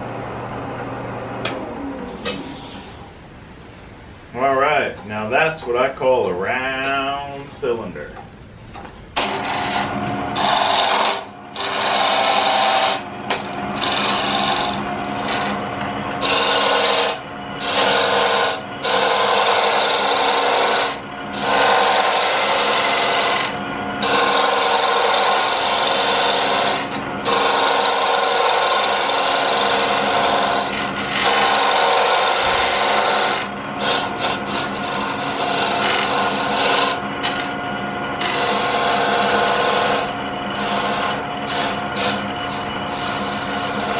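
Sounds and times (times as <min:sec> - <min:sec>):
lathe humming: 0:09.2 - 0:43.9
lathe tool scraping wood: 0:09.2 - 0:43.9.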